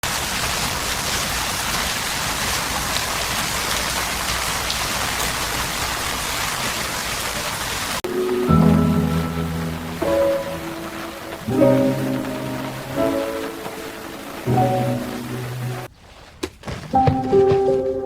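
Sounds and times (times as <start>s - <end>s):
raindrops ticking: 0.0s - 15.9s
steady rain: 0.0s - 15.9s
music notes: 8.0s - 15.9s, 17.0s - 18.0s.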